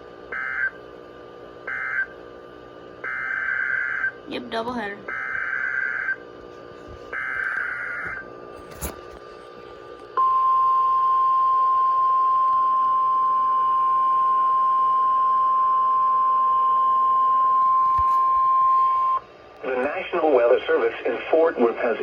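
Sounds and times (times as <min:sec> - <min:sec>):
steady alarm tone: 0:00.3 - 0:00.8, 0:01.6 - 0:02.2, 0:03.0 - 0:06.3, 0:07.1 - 0:08.3.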